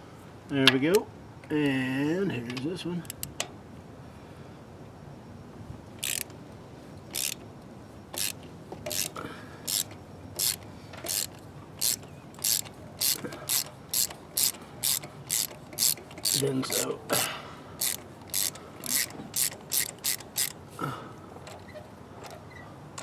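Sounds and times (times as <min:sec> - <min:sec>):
socket ratchet clicking: 0:03.0 - 0:03.5, 0:06.0 - 0:06.3, 0:07.1 - 0:07.4, 0:08.2 - 0:16.9, 0:17.8 - 0:20.6.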